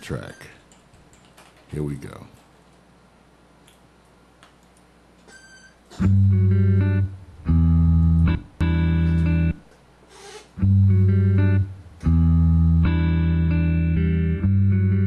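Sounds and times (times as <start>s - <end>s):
guitar chords: 6.0s - 9.7s, 10.6s - 15.0s.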